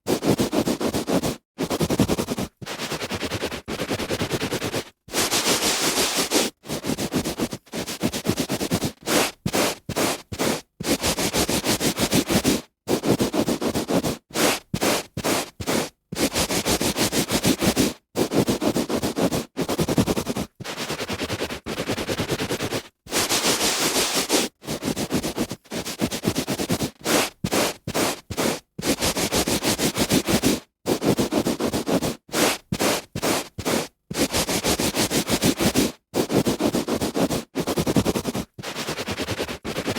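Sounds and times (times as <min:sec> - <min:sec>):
hand rubbing on carpet: 0:00.1 - 0:39.9.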